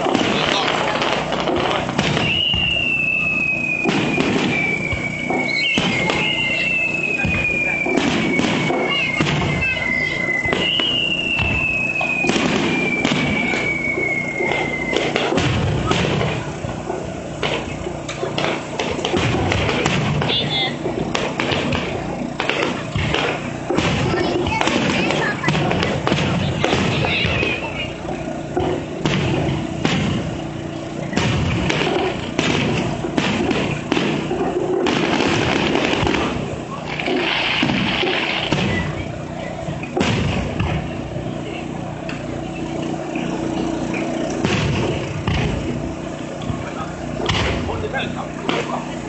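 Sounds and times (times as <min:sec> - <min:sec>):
constant rumble: 0:00.0 - 0:49.0
fireworks bangs and crackles: 0:00.0 - 0:49.0
high sliding whistle: 0:02.2 - 0:15.3.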